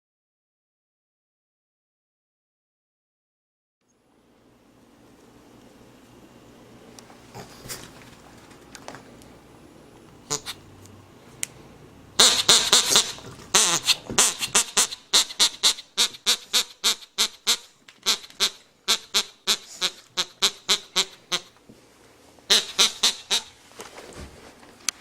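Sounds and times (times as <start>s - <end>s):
pug snorting: 7.3s - 8.0s, 12.2s - 17.0s.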